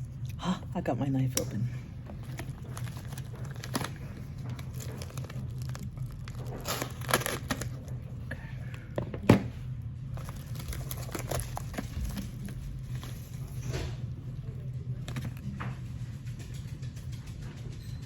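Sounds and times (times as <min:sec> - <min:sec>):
packaging crinkling and tearing: 0:02.1 - 0:08.3, 0:10.0 - 0:15.6.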